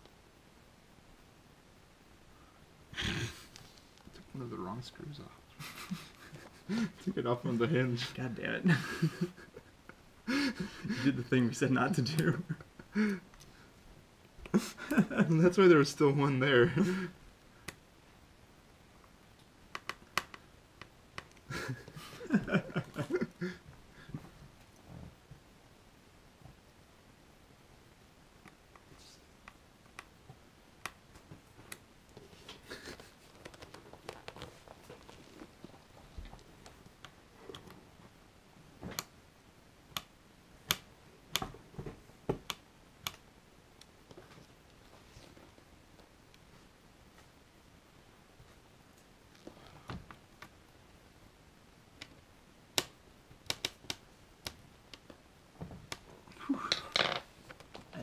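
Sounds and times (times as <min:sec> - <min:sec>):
clicks and taps on plastic parts: 0:19.7 - 0:21.4, 0:52.8 - 0:55.2.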